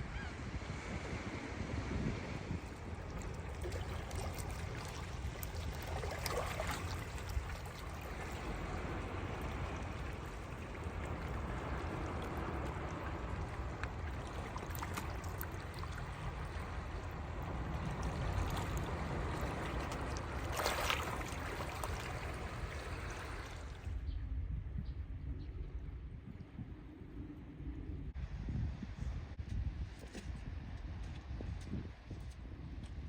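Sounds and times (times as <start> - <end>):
rushing water: 2.4 - 23.9
low rumble: 22.3 - 31.7.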